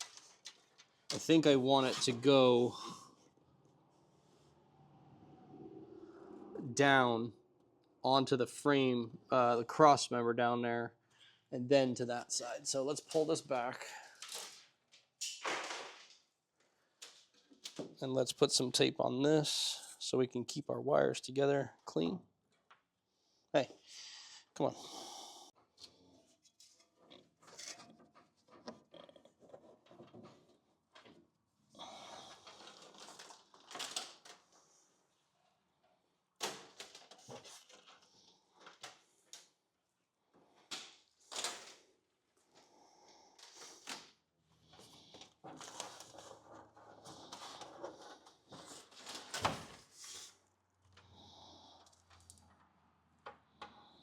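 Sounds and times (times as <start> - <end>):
wires rustling and scraping: 0.0 - 6.6, 25.8 - 31.3, 32.1 - 35.2, 36.7 - 39.5, 44.7 - 51.2.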